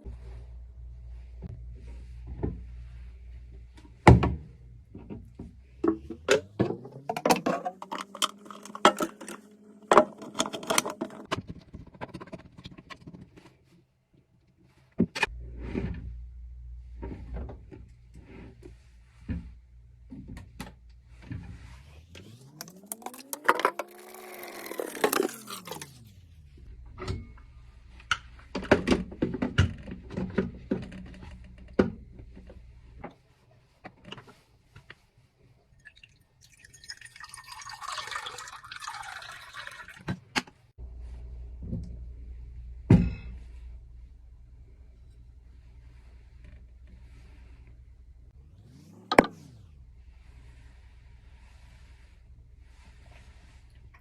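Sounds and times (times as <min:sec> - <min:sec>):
ringing pour rising in pitch: 0:22.2 - 0:25.9, 0:35.9 - 0:40.0
splashing pour: 0:22.4 - 0:25.9, 0:35.8 - 0:40.2
liquid pouring: 0:22.4 - 0:26.0, 0:35.8 - 0:40.1.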